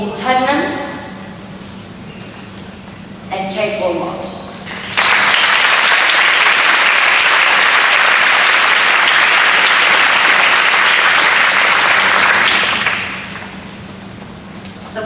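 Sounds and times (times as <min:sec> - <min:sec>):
audience applauding: 0:04.7 - 0:13.6.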